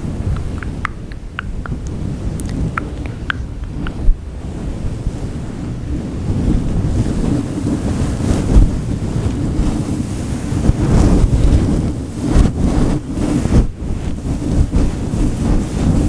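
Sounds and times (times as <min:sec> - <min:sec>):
fingers rubbing furry windscreen: 0:00.0 - 0:04.8.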